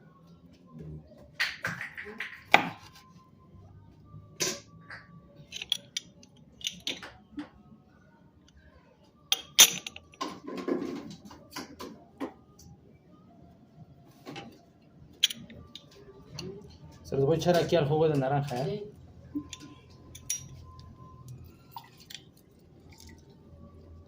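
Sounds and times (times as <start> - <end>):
dishes and utensils clinking: 5.5 - 7.1, 9.3 - 11.1, 19.4 - 20.8.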